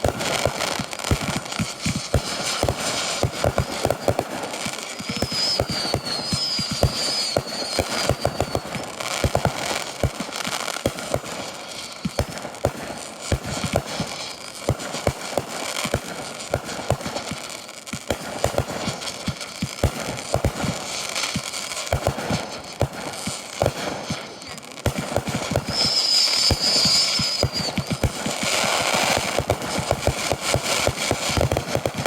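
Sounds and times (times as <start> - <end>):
fireworks bangs and crackles: 0.0 - 32.0
high wavering whistle: 5.1 - 8.7, 25.7 - 28.0.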